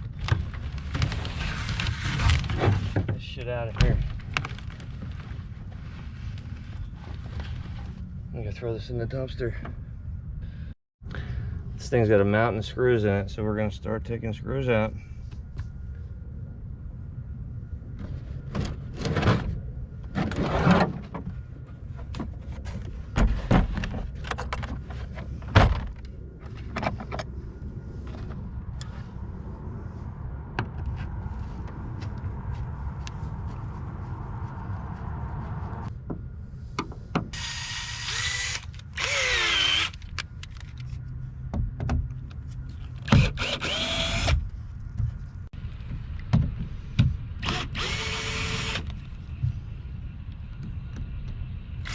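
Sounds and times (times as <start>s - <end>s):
power drill motor whining: 37.4s - 40.2s, 43.1s - 44.4s, 47.4s - 48.9s.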